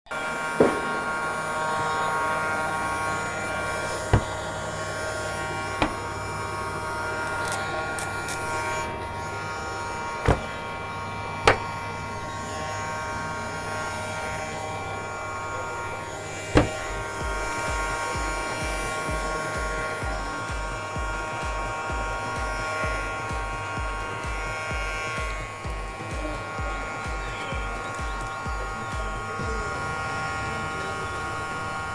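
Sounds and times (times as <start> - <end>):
low pulsing: 0.1 - 31.9
small electric motor buzzing hum: 0.1 - 31.9.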